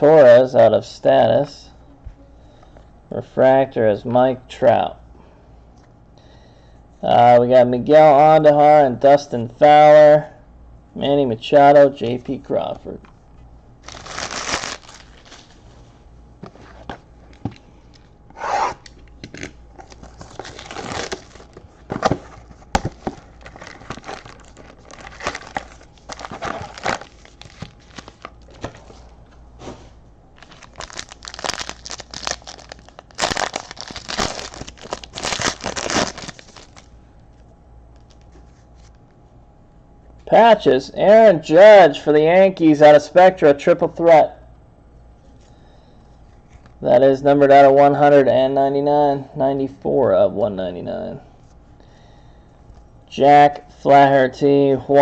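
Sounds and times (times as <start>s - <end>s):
foil wrappers tearing and crinkling: 13.8s - 15.6s, 19.3s - 21.6s, 22.8s - 28.6s, 30.4s - 36.9s.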